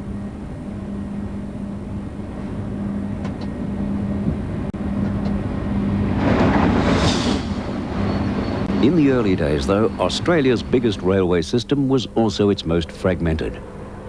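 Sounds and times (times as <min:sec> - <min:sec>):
train engine drone and rumble: 0:00.0 - 0:14.0.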